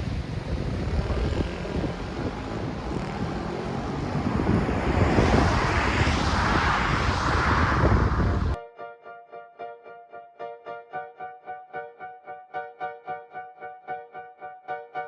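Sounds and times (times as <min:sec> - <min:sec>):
vehicle rushing: 0:00.0 - 0:08.6
wind buffeting microphone: 0:00.0 - 0:08.6.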